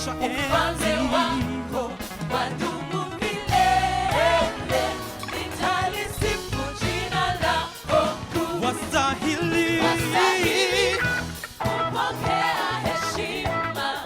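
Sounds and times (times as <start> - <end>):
band playing gospel music: 0.0 - 14.0
person singing: 8.4 - 11.2.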